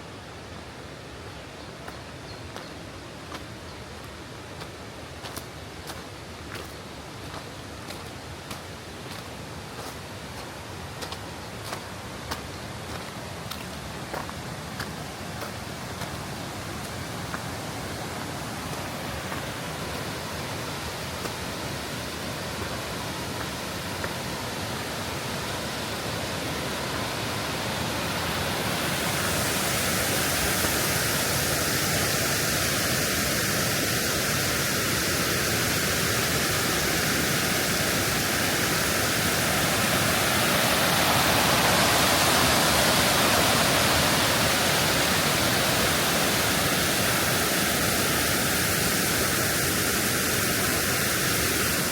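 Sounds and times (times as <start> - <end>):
river water running: 0.0 - 51.9.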